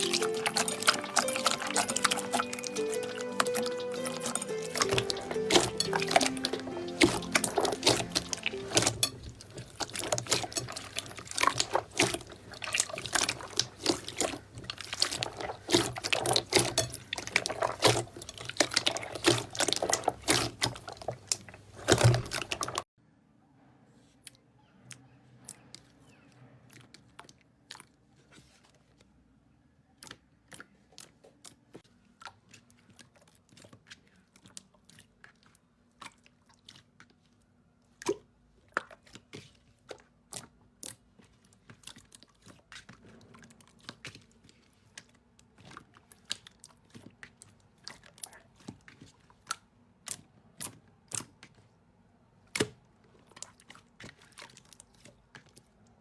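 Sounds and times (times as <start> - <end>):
slime crackling and popping: 0.0 - 22.8.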